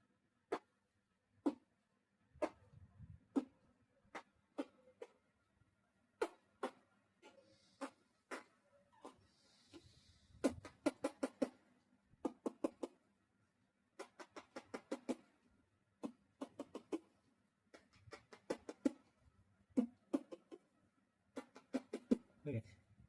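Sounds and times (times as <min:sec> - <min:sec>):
man making mouth popping clicks: 0:01.4 - 0:01.7, 0:02.4 - 0:05.2, 0:06.2 - 0:13.0, 0:14.0 - 0:15.4, 0:16.0 - 0:22.3.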